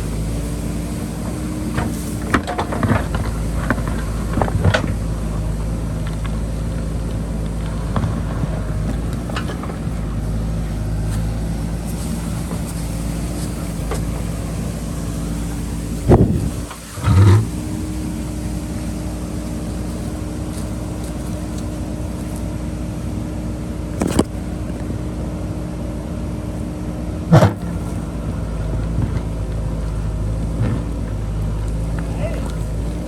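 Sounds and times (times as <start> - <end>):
diesel engine running under load: 0.0 - 33.0
sharp digging knocks: 27.3 - 27.8.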